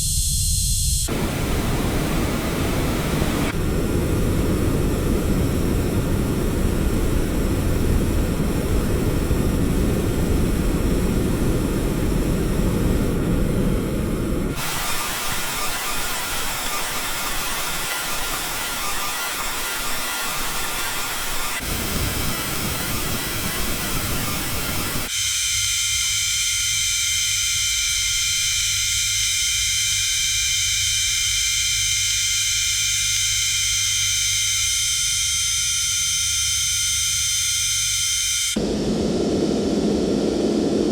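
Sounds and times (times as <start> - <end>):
train low rumble: 0.0 - 25.1, 38.6 - 40.9
hiss: 1.1 - 13.1, 14.6 - 34.9.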